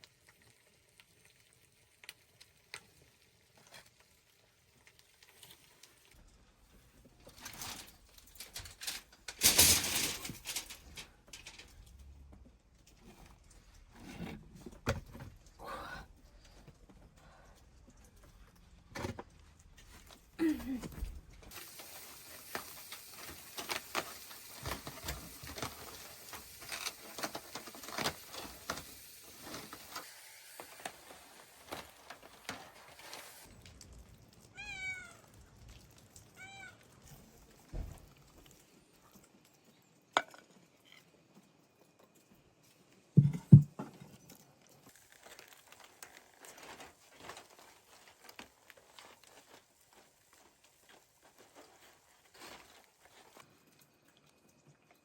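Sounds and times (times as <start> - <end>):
rustling: 7.2 - 11.9, 45.0 - 53.4
cat meowing: 34.5 - 35.2, 36.4 - 36.9
heavy thumps: 43.2 - 43.8.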